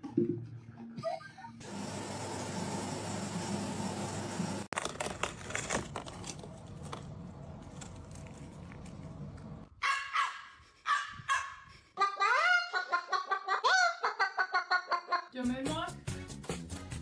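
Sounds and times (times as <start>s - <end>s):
dog barks: 9.8s - 11.6s.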